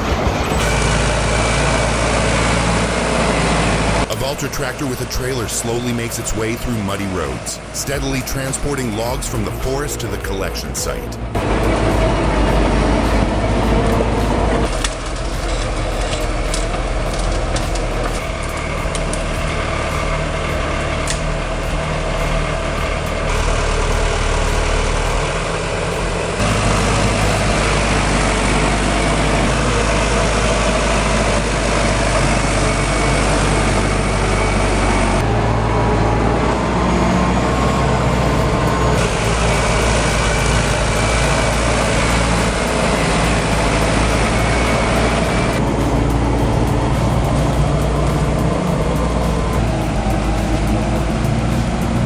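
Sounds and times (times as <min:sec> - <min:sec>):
tractor diesel engine running: 0:00.0 - 0:52.0.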